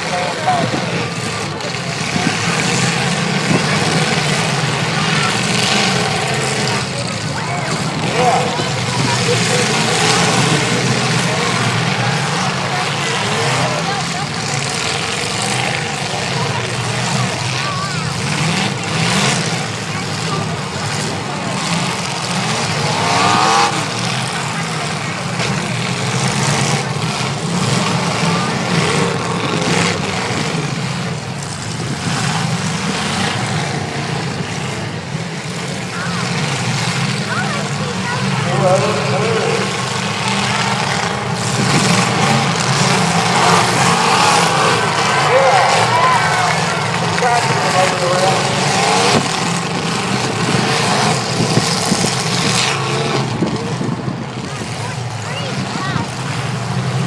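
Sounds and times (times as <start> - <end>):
car engines running loudly: 0.0 - 57.0
cars crashing: 0.0 - 57.0.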